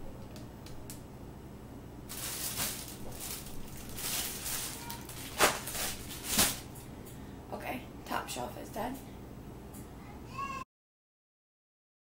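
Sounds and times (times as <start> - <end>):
food packaging rustling: 2.1 - 6.8.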